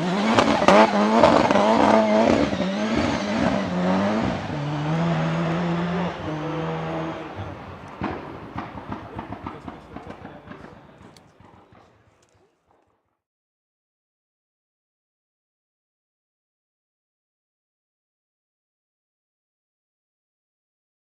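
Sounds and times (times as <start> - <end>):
turbocharged engine revving: 0.0 - 11.8
exhaust pops: 0.2 - 12.9.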